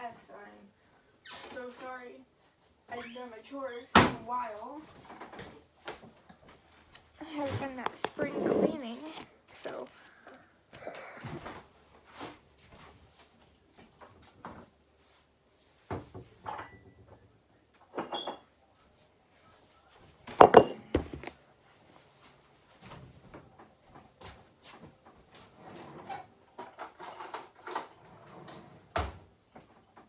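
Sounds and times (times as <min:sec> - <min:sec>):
kitchen items clattering: 0:06.8 - 0:10.0, 0:20.4 - 0:21.2.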